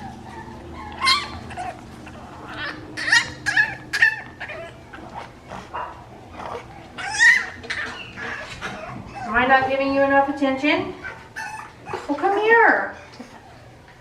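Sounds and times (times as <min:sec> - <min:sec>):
puppy whining and yipping: 0:00.0 - 0:05.3, 0:06.3 - 0:09.7, 0:11.0 - 0:12.1, 0:12.9 - 0:14.0.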